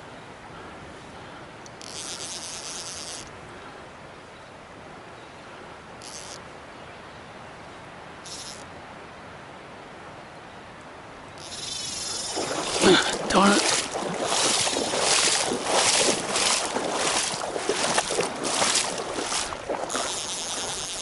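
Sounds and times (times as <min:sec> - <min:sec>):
fly reel drag buzzing: 0:01.7 - 0:03.3, 0:06.0 - 0:06.4, 0:08.3 - 0:08.7, 0:11.4 - 0:21.0
river water rushing: 0:10.8 - 0:21.0.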